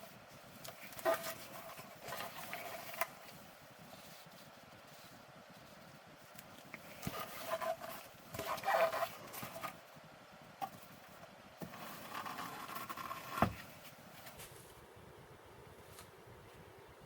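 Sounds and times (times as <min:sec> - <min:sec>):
scraping and rubbing on wood: 0:00.6 - 0:04.3, 0:06.8 - 0:09.8, 0:11.6 - 0:14.4.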